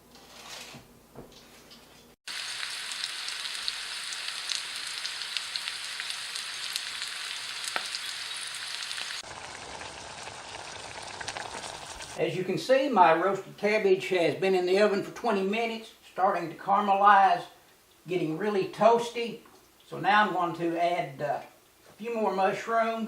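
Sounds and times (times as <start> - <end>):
food sizzling in a pan: 2.2 - 12.2.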